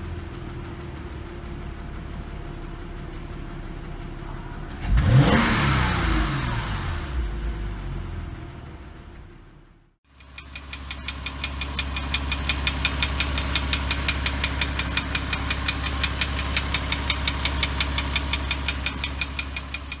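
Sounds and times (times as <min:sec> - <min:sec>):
car engine running: 0:00.0 - 0:20.0
engine ticking knock: 0:10.1 - 0:20.0.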